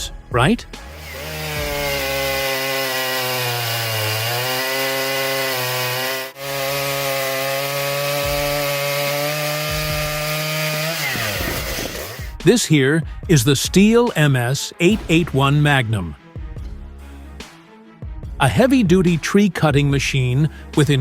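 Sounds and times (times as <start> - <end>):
chainsaw cutting wood: 0.8 - 12.4.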